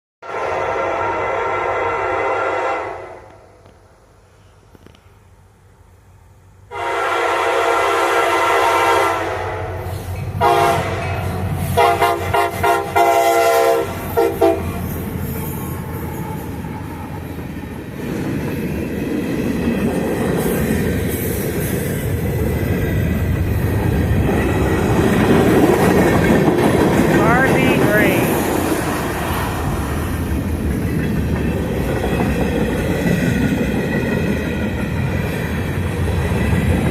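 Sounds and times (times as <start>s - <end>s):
train air horn blasts: 0.2s - 3.4s, 6.7s - 9.8s, 10.4s - 14.8s
train rumbling and rattling: 7.6s - 36.9s
wheels clickety-clack: 17.5s - 27.2s, 29.2s - 36.9s.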